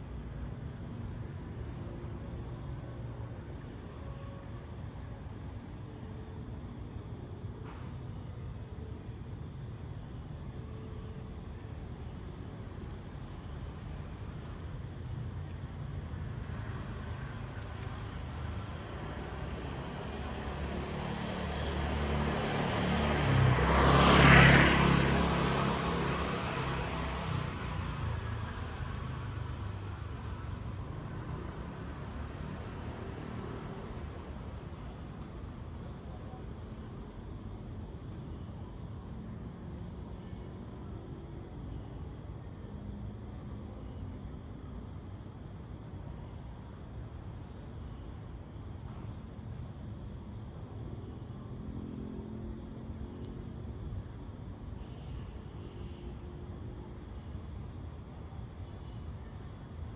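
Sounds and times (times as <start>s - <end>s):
low street ambience rumble: 0.0s - 59.9s
crickets chirring: 7.6s - 27.6s, 28.4s - 40.4s, 41.3s - 59.9s
vehicle passing: 18.4s - 38.1s, 48.8s - 54.2s.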